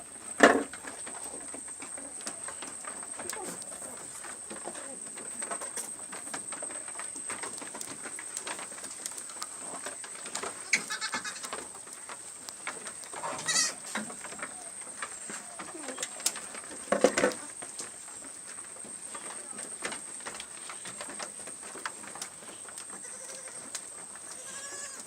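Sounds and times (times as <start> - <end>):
faint rustling and clicks: 0.0 - 25.0
goats bleating: 10.6 - 11.5, 13.4 - 13.8, 22.9 - 25.0.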